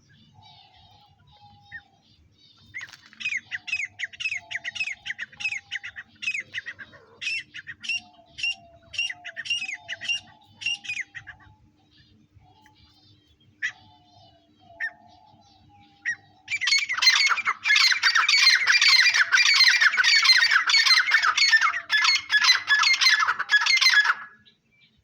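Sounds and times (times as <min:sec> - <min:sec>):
faint bird chirps: 0:00.0 - 0:25.0
francolin harsh squawking calls: 0:02.7 - 0:11.6, 0:16.0 - 0:24.4.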